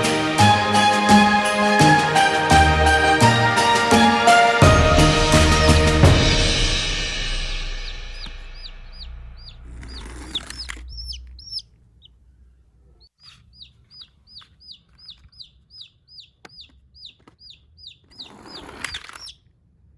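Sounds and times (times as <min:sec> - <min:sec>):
bird chirping: 0:07.7 - 0:19.5.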